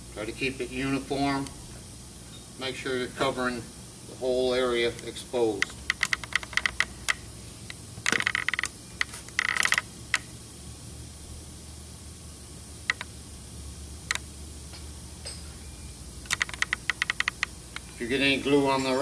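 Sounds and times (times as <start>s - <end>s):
brush clicking ticks: 5.6s - 7.2s, 12.9s - 13.1s, 16.2s - 17.9s.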